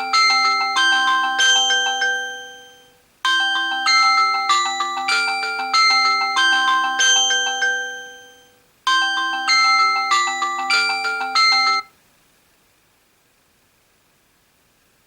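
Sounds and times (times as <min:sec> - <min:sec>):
phone alarm ringtone melody: 0:00.0 - 0:11.9.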